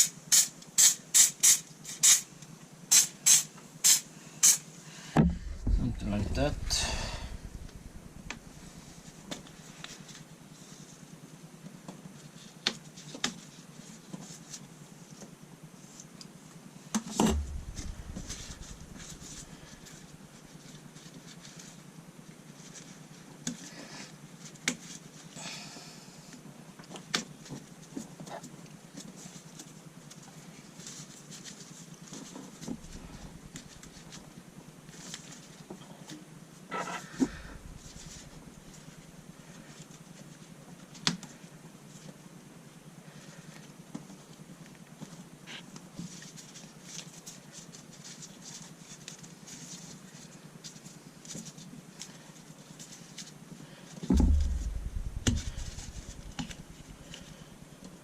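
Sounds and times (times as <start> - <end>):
steady low hum: 4.9 - 9.7, 17.2 - 20.6, 32.6 - 35.0, 37.0 - 39.6, 54.1 - 57.8.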